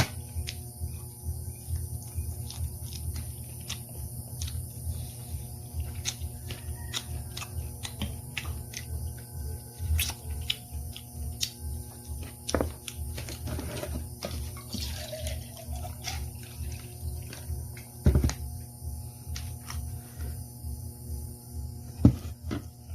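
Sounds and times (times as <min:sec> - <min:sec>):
wet chewing and mouth clicks: 0:01.6 - 0:13.4.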